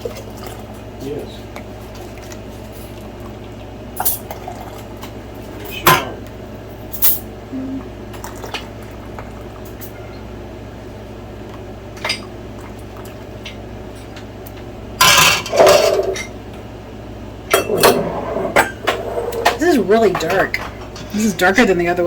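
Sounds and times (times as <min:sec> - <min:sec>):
dishes clattering: 0:05.5 - 0:06.2, 0:15.0 - 0:16.4, 0:17.5 - 0:21.5.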